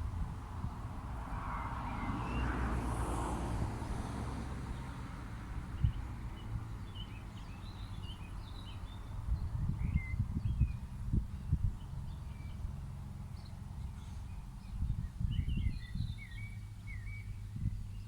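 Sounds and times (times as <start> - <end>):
small birds chirping: 5.8 - 18.0.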